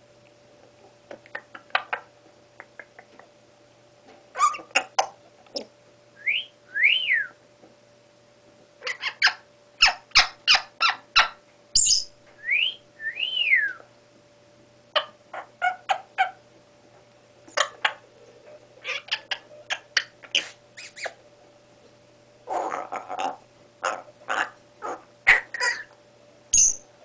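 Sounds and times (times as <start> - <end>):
parrot chirps: 4.4 - 5.1, 8.8 - 12.1, 18.8 - 21.2, 22.5 - 25.9, 26.5 - 26.8
parrot whistles rising and falling: 6.2 - 7.4, 11.8 - 13.8.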